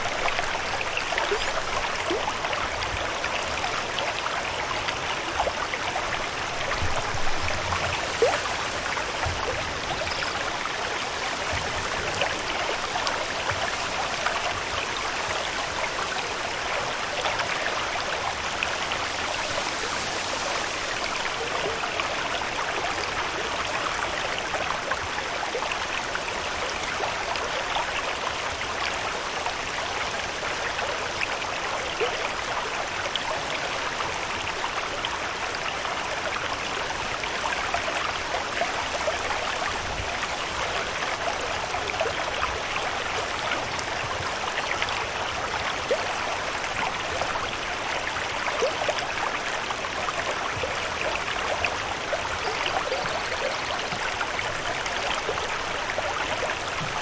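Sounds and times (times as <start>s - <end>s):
water rushing hiss: 0.0s - 24.6s.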